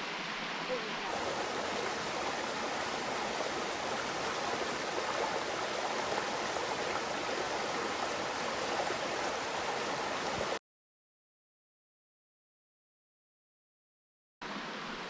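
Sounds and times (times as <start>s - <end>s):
creek water babbling: 0.0s - 10.6s.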